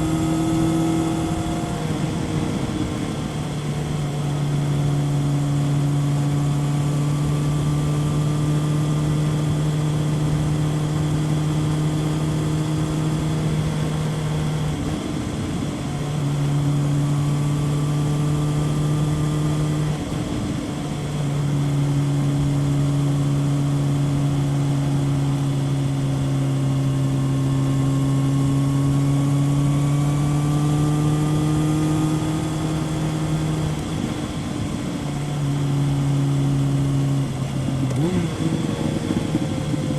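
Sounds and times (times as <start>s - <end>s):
motorcycle engine cruising: 0.0s - 39.9s
wind noise: 37.2s - 39.9s.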